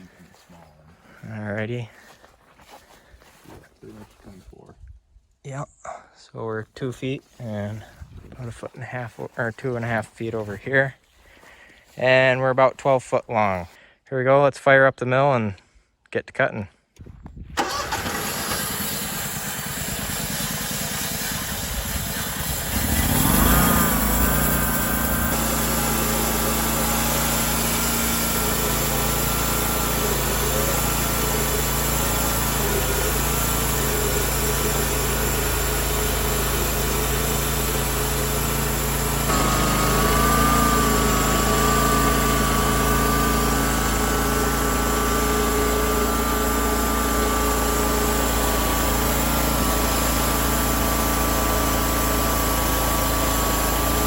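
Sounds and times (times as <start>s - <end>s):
sawmill engine running: 17.6s - 54.0s.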